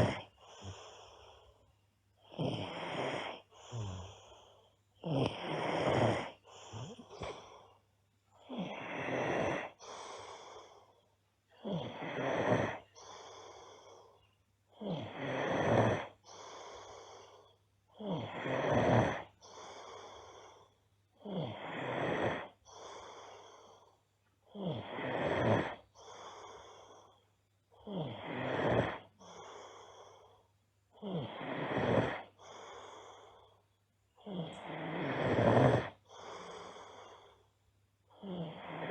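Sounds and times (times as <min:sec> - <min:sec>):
girl snoring loudly: 0:00.0 - 0:01.2, 0:02.2 - 0:04.4, 0:05.0 - 0:07.4, 0:08.4 - 0:10.8, 0:11.6 - 0:13.9, 0:14.7 - 0:23.4, 0:24.5 - 0:27.0, 0:27.8 - 0:30.2, 0:31.0 - 0:33.4, 0:34.2 - 0:37.4, 0:38.1 - 0:38.9.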